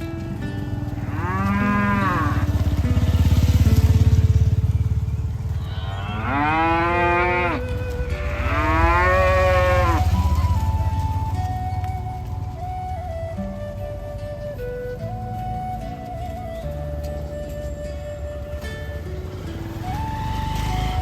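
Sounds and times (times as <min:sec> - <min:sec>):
cows mooing: 0:00.9 - 0:03.2, 0:05.7 - 0:10.5.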